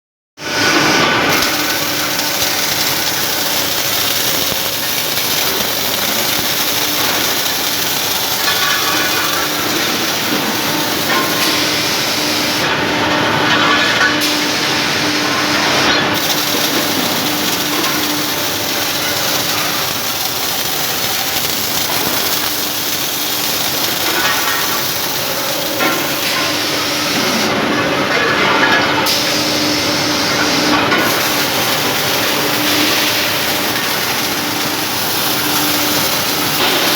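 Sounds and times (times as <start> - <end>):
machinery rushing noise: 0.4 - 36.9.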